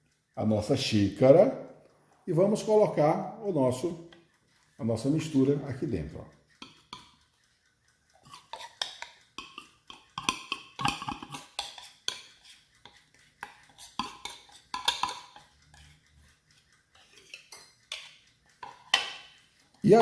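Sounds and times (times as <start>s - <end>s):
utensil clinking against bowl: 6.6s - 7.2s, 8.2s - 16.0s, 17.0s - 19.4s.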